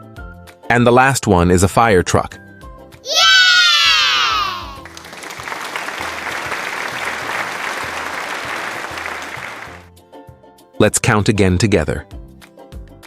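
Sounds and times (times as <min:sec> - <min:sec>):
soft background music: 0:00.0 - 0:03.0, 0:04.8 - 0:13.0
falling pitched cry: 0:03.1 - 0:04.8
applause: 0:03.7 - 0:09.9.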